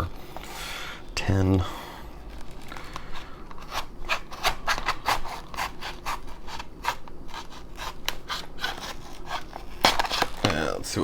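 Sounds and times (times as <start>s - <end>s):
plastic packaging scratching: 2.3s - 11.0s.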